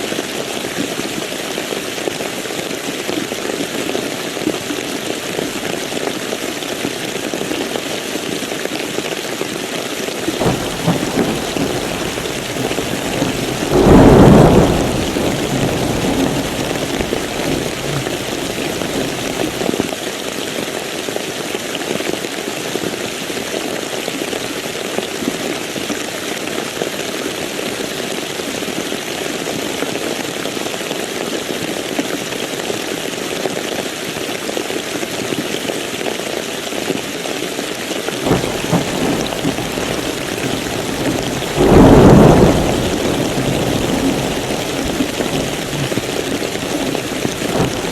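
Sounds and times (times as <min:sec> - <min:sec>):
steady rain falling: 0:10.3 - 0:20.0, 0:38.2 - 0:47.9
loud thunderclap: 0:10.4 - 0:19.7, 0:38.3 - 0:47.9
low rumble of thunder: 0:10.4 - 0:19.7, 0:38.3 - 0:47.9.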